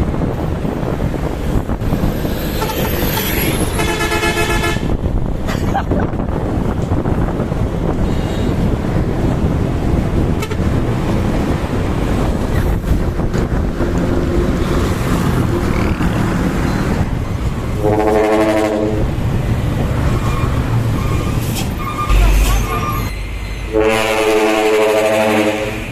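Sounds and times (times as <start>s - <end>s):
diesel truck engine rumbling: 0.0s - 25.9s
trumpet horn blast: 2.6s - 4.9s, 17.8s - 19.0s, 23.7s - 25.9s.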